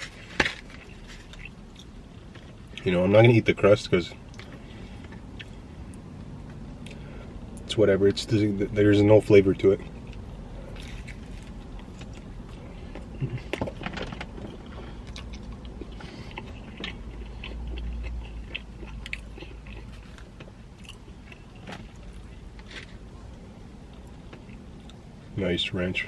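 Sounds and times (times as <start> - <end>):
wet chewing with crunches: 0.0 - 2.9, 9.7 - 25.0
steady low rumble: 0.0 - 26.0.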